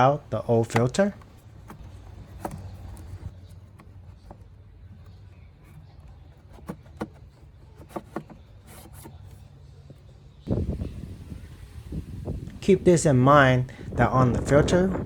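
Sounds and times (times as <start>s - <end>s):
air filter knocking and scraping: 0.0s - 12.3s.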